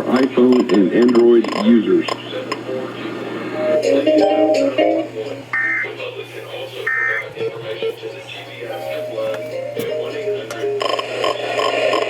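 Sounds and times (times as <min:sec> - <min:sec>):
music playing: 0:03.5 - 0:05.5, 0:07.3 - 0:12.0.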